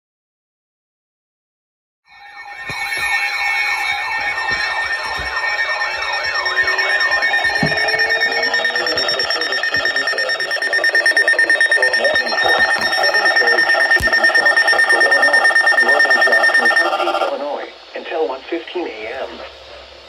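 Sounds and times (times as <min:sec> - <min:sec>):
warbling siren-like tone: 0:02.1 - 0:17.3
steady high tone: 0:02.1 - 0:17.6
rapid pulsing alert tone: 0:02.2 - 0:17.3.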